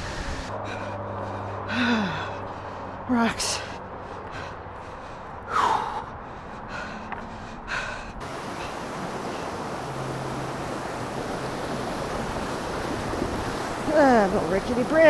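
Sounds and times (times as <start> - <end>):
person gasping breaths: 0.0 - 3.0, 3.6 - 8.2
steady rushing noise: 0.0 - 15.0.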